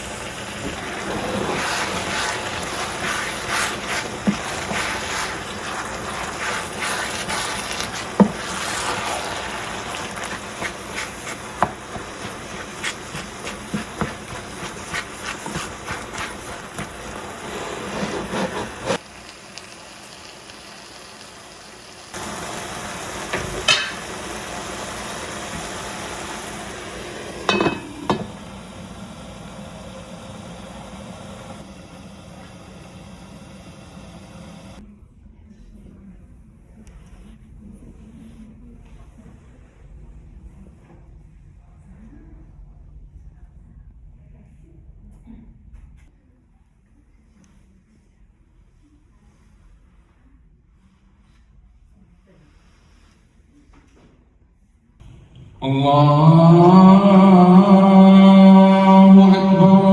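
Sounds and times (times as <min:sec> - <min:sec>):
food sizzling: 0:00.0 - 0:34.8, 0:56.5 - 0:59.9
utensils clicking and tapping: 0:23.3 - 0:24.1, 0:27.4 - 0:28.4.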